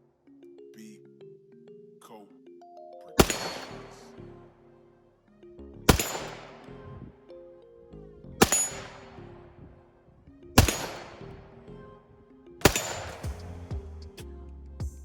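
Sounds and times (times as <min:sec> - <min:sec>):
music: 0:00.0 - 0:15.0
rifle shots with echo: 0:03.2 - 0:04.1, 0:05.9 - 0:06.8, 0:08.4 - 0:09.6, 0:10.6 - 0:11.5, 0:12.6 - 0:13.5.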